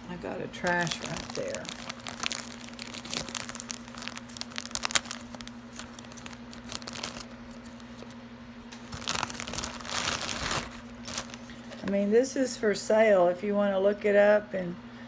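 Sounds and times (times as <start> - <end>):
low electrical hum: 0.0 - 15.0
packaging crinkling and tearing: 0.6 - 11.9.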